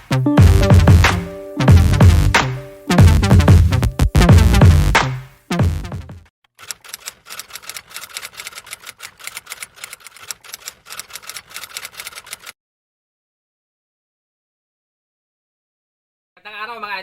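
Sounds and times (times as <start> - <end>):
electronic music: 0.0 - 6.2
typewriter typing clicks: 6.6 - 12.6.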